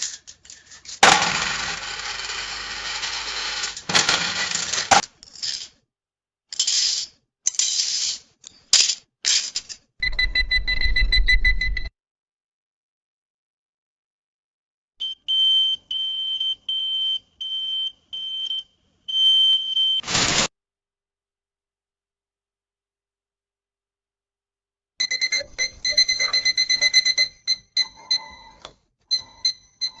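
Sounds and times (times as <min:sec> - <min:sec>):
cash register sounds: 0:00.0 - 0:05.6, 0:20.0 - 0:20.5, 0:25.0 - 0:30.0
coins clinking: 0:00.0 - 0:05.8
rapid electronic beeping: 0:25.0 - 0:30.0.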